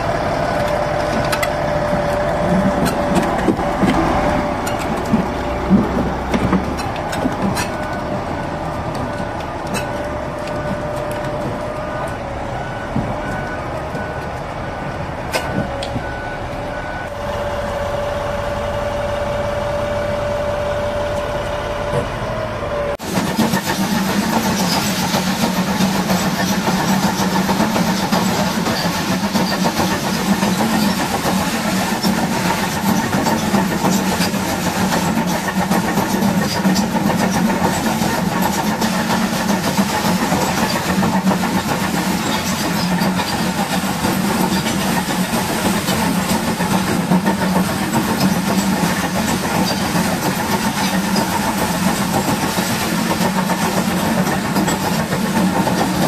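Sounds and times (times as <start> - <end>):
diesel machinery whining: 0.0 - 56.0
rough loud engine: 0.0 - 56.0.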